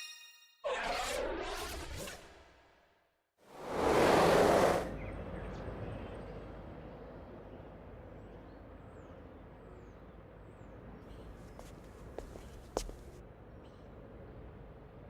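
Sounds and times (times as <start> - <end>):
hiss: 3.5 - 4.9.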